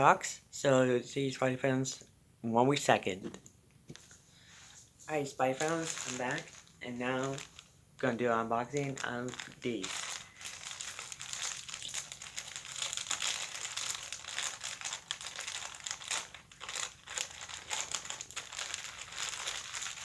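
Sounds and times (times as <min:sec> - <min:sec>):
packaging crinkling and rustling: 0:05.0 - 0:20.0.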